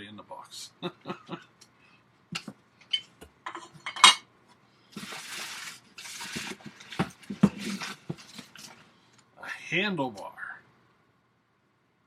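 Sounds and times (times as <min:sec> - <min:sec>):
rustling: 0:04.9 - 0:09.0.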